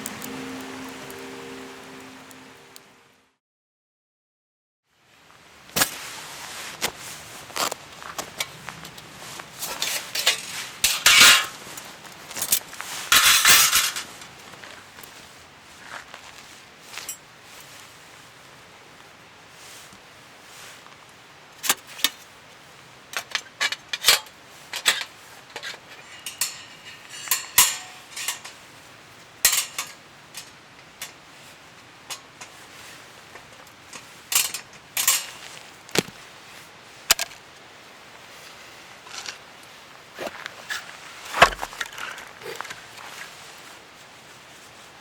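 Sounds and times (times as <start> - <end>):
metal cookware clinking: 26.0 - 28.5, 29.5 - 30.5, 34.4 - 35.5.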